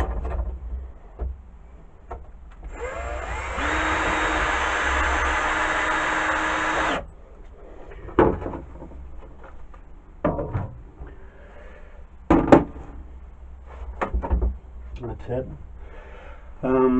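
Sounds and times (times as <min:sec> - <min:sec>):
power drill driving a screw: 0:02.7 - 0:07.0.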